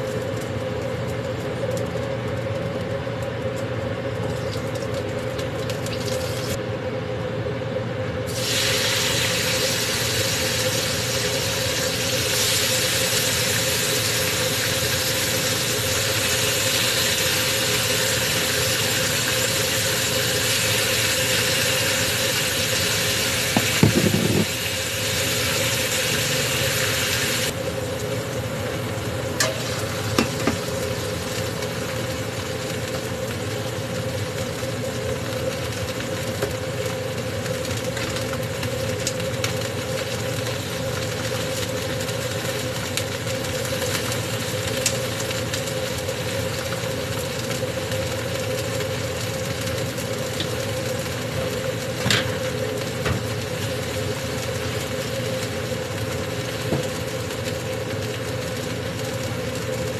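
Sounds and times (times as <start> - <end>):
food sizzling in hot oil: 0.0 - 6.6, 8.3 - 59.9
machine hum: 0.0 - 41.0.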